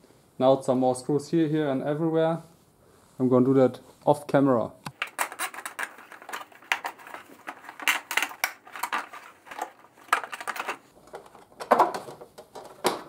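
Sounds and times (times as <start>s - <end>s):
hand tools clicking and clattering: 4.9s - 13.0s
plastic clips being worked loose: 4.9s - 13.0s.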